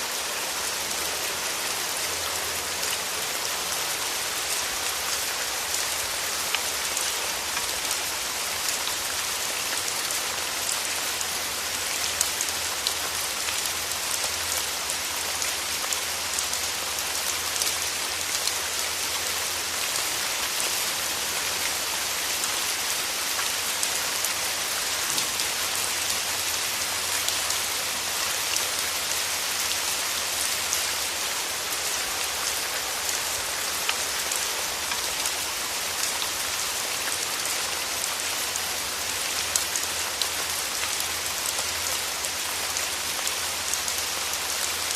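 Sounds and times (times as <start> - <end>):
rain pattering: 0.0 - 44.9.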